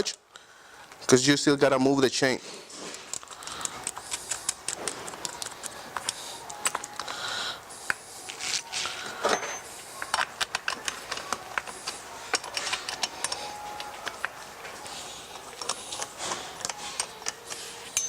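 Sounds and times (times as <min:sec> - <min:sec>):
clicks and taps of metal parts: 0:03.0 - 0:07.2, 0:09.2 - 0:14.4, 0:15.5 - 0:18.0.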